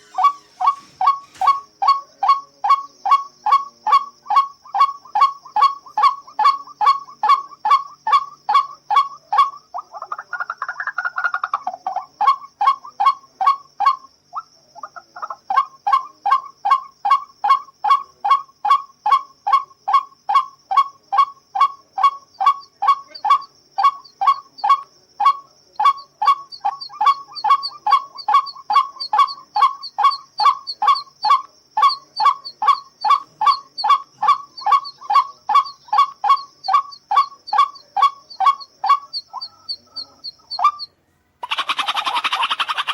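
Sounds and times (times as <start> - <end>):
waterhen calling: 0.0 - 9.6, 21.6 - 42.9
faint high-pitched whine: 0.0 - 42.9.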